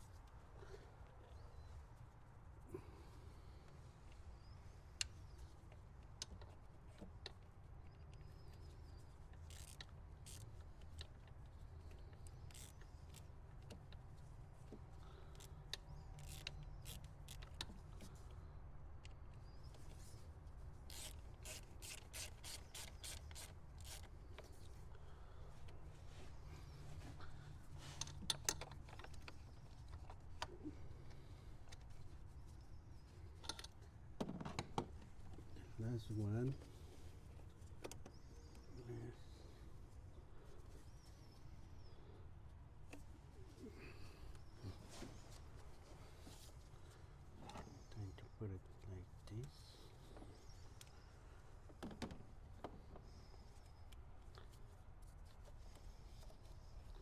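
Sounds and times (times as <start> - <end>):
screws clicking into plastic: 20.9 - 24.1.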